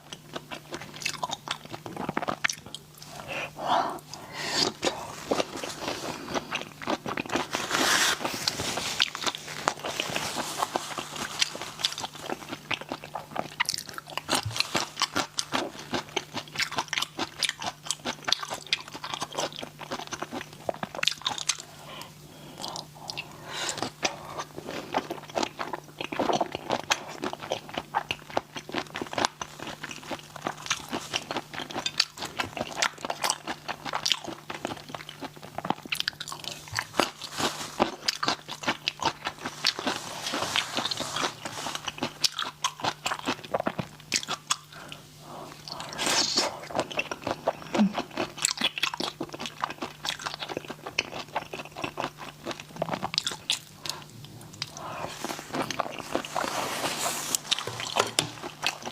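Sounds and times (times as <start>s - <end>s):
crunching and wet chewing: 0.0s - 58.9s.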